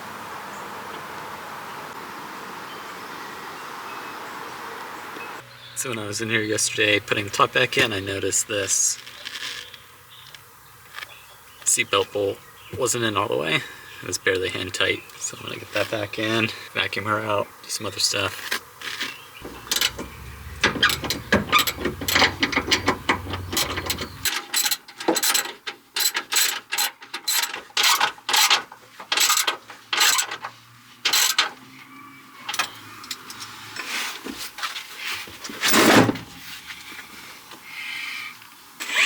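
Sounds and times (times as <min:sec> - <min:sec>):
ratchet wrench clicking: 0:19.5 - 0:28.5, 0:29.2 - 0:30.3, 0:31.1 - 0:31.4.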